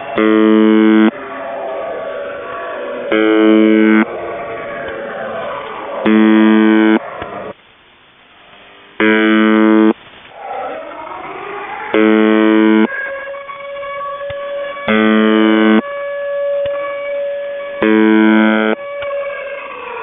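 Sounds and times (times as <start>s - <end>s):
harsh radio buzzes: 0.0s - 1.3s, 3.1s - 10.1s, 11.7s - 17.0s, 17.8s - 20.0s
air-raid siren wailing: 0.0s - 7.6s, 9.0s - 20.0s.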